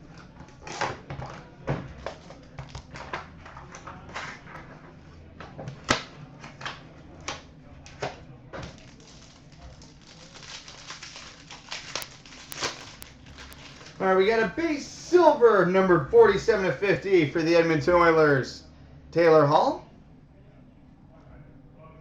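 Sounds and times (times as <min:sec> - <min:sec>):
cards and packaging rustling: 0:05.7 - 0:15.4.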